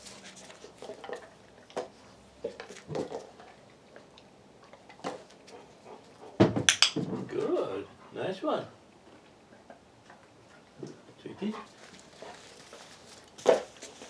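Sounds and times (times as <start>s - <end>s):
dog tapping a bottle: 6.6s - 7.1s
bottle clattering: 6.7s - 7.0s.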